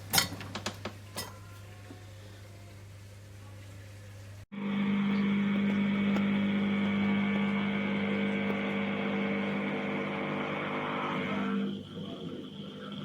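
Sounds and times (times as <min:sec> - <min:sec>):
dishwasher pump humming: 0:04.5 - 0:13.0.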